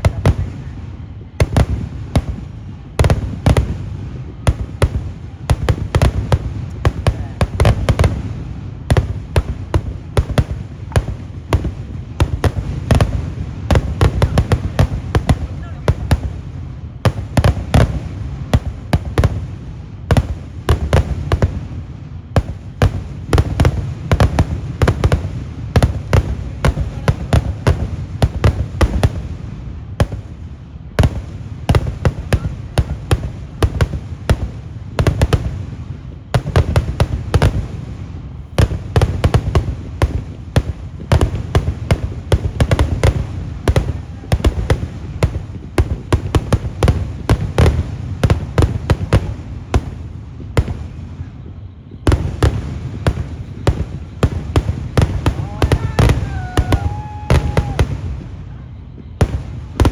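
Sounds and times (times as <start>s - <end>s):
continuous low rumble: 0.0s - 59.9s
firework bangs: 0.0s - 59.9s.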